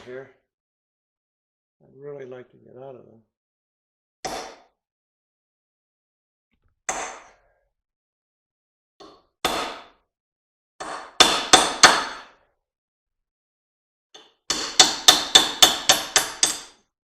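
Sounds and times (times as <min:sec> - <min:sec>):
hammer striking metal punch: 0:14.5 - 0:16.8.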